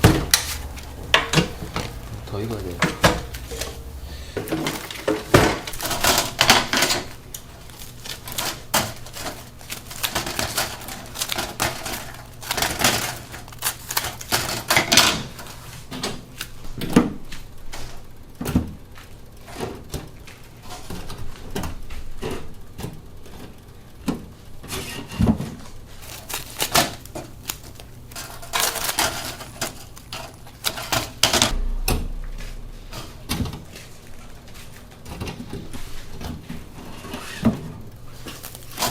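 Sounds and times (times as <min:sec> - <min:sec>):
loud metallic knocks: 0:00.0 - 0:06.2, 0:31.5 - 0:34.2.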